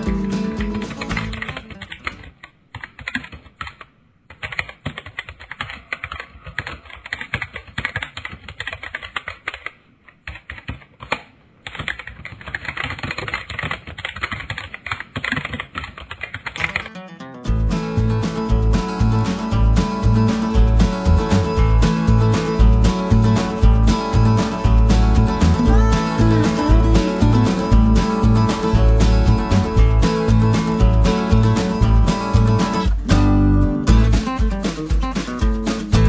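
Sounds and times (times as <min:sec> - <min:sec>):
music: 0:00.0 - 0:01.8, 0:16.9 - 0:36.0
keyboard typing: 0:00.0 - 0:17.0, 0:20.2 - 0:33.1.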